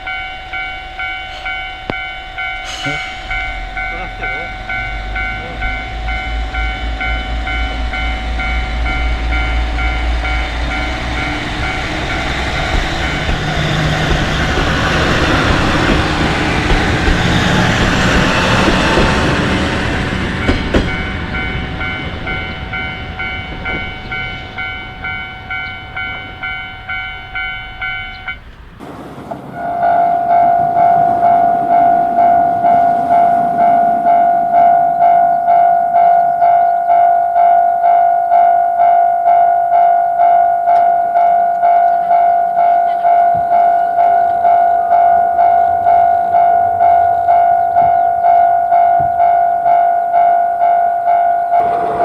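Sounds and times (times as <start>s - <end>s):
diesel train passing: 0.0s - 52.0s
railroad crossing bell ringing: 0.0s - 52.0s.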